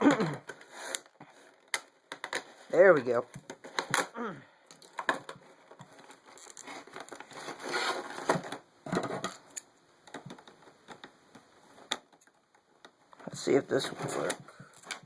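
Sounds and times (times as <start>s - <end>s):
packaging crinkling and scraping: 0.4s - 4.1s, 4.7s - 11.0s.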